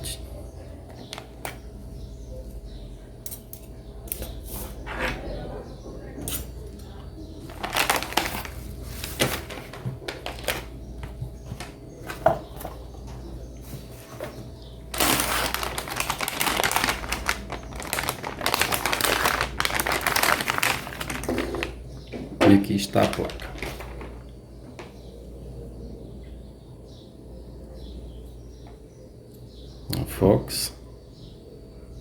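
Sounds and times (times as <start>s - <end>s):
packaging rustling and crinkling: 7.4s - 12.8s, 13.7s - 21.9s, 22.6s - 24.3s.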